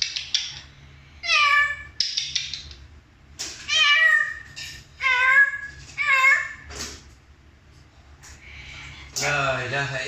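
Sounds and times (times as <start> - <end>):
parrot imitating cat meow: 1.2 - 2.0, 3.6 - 6.7
parrot sharp clicks: 2.0 - 2.8.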